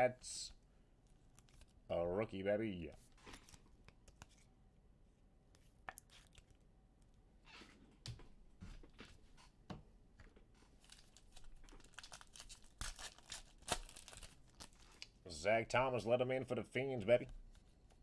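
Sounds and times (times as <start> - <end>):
foil wrappers rustling: 10.8 - 15.0.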